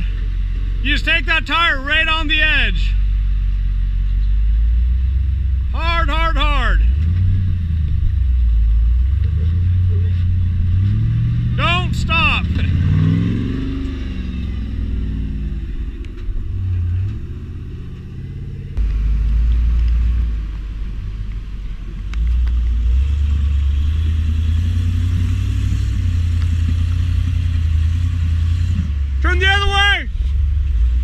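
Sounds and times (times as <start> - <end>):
off-road vehicle engine under load: 0.0 - 31.0.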